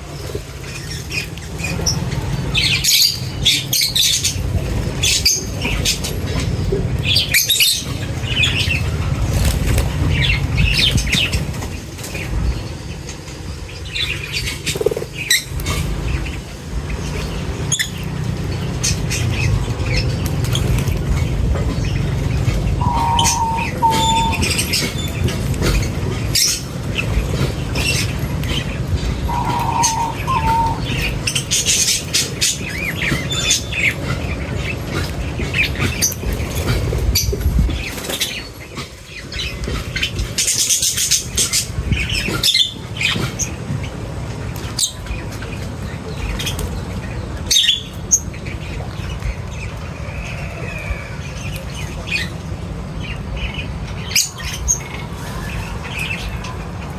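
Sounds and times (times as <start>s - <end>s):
steady low rumble: 0.0s - 37.9s
birds chirping and squawking: 0.0s - 56.9s.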